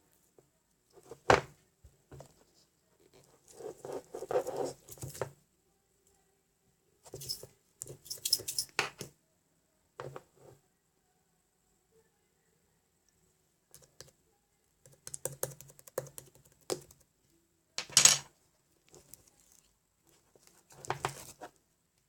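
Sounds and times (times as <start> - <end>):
scratchy rustling and scraping: 2.2 - 5.2, 18.9 - 21.6.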